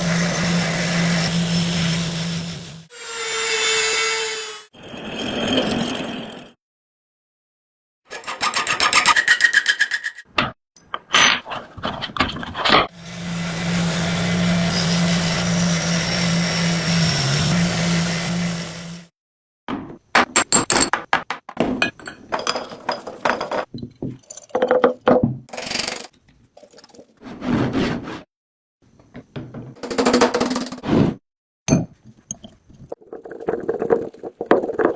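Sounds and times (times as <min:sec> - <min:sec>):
small motor running: 0:00.0 - 0:04.6, 0:13.0 - 0:19.1.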